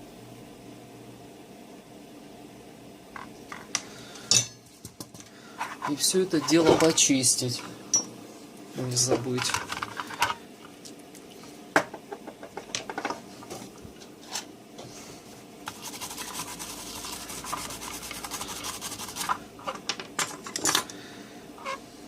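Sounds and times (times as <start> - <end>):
rapid rubbing strokes: 15.7 - 19.4.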